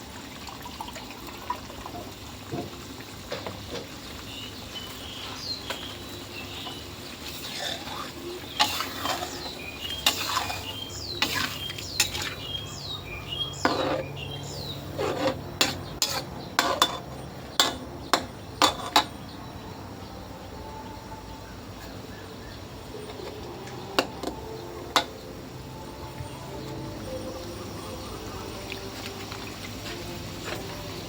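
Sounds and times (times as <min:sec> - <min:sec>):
metal utensil clinking on pot: 0:08.6 - 0:12.4, 0:15.0 - 0:19.2.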